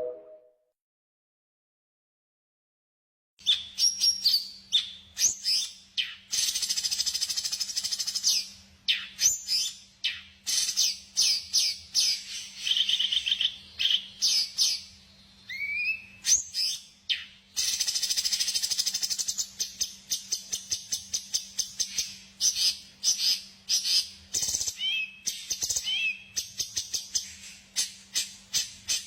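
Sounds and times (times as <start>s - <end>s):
bird trills: 0.0s - 0.4s
songbirds chirping: 8.6s - 17.7s.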